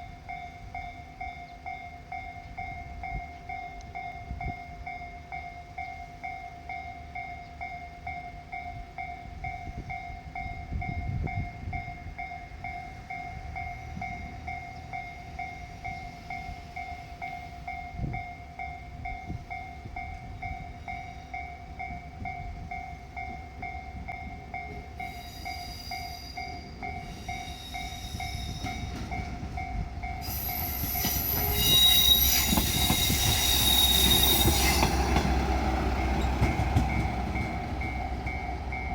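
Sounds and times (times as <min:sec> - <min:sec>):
diesel railcar approaching: 0:00.0 - 0:38.9
train wheels squealing: 0:25.0 - 0:38.9.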